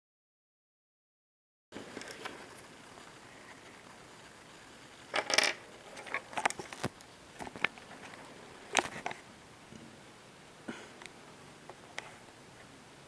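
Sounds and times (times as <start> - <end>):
small metal parts clinking: 5.1 - 6.5.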